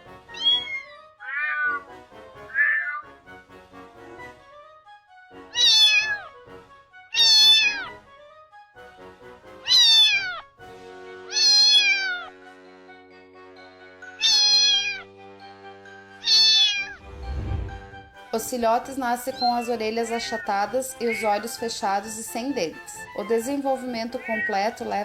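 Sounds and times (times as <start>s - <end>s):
soft background music: 0.0s - 25.0s
cat meowing: 0.3s - 1.8s, 2.4s - 3.1s, 5.5s - 6.4s, 7.1s - 8.0s, 9.6s - 10.5s, 11.3s - 12.3s, 14.1s - 15.1s, 16.2s - 17.0s, 19.4s - 21.5s, 24.1s - 24.8s.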